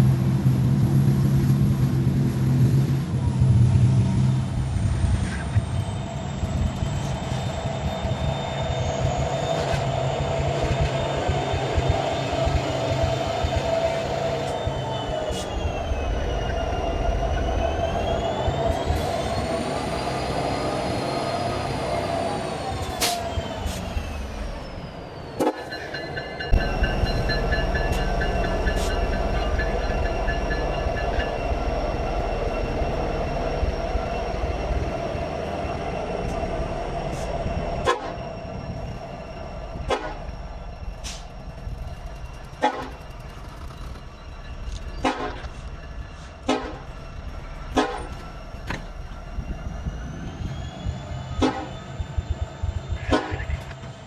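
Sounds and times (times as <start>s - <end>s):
diesel locomotive rumble: 0.0s - 54.0s
train cars clanking: 0.0s - 54.0s
high steady squeal: 3.0s - 54.0s.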